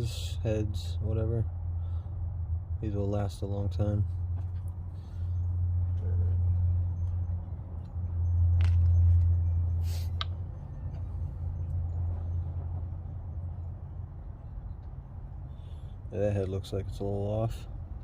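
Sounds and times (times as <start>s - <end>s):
low steady rumble: 0.0s - 18.0s.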